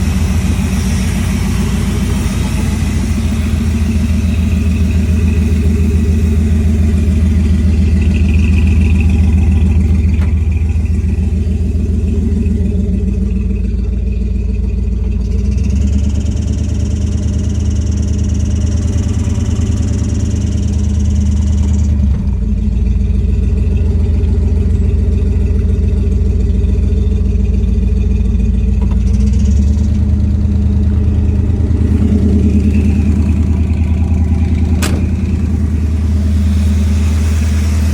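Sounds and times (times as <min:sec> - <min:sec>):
car engine running: 0:00.0 - 0:37.9
high hiss: 0:31.9 - 0:37.9.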